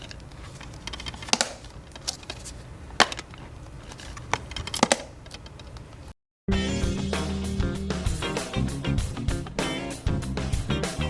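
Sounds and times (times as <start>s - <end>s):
plastic case snapping open and shut: 0.9s - 2.4s.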